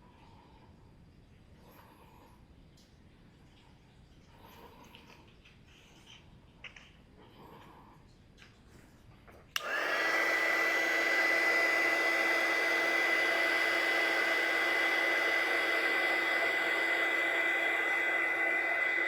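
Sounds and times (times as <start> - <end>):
heat gun fan whine: 9.5 - 19.0.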